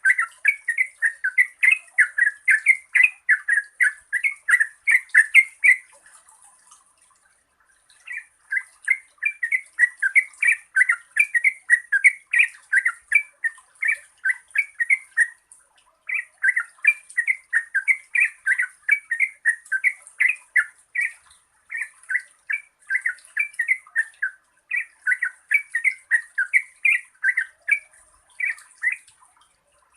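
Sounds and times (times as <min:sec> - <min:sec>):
bulbul singing bubbly notes: 0:16.1 - 0:29.2.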